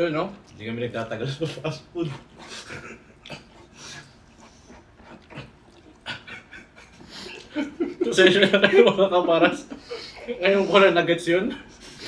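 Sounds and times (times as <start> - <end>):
person chewing: 2.0 - 7.6
person breathing: 3.4 - 4.9, 7.0 - 7.5, 9.7 - 10.8.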